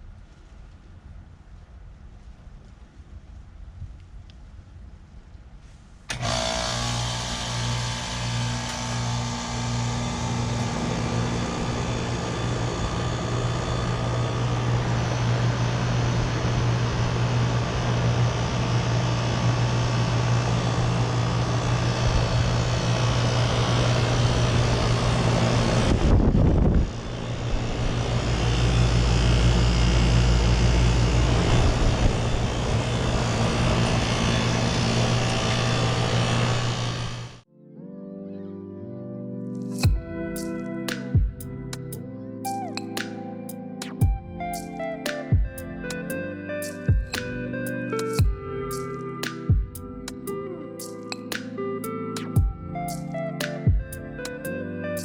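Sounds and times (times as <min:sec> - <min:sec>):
heat pump humming: 0:06.1 - 0:37.4.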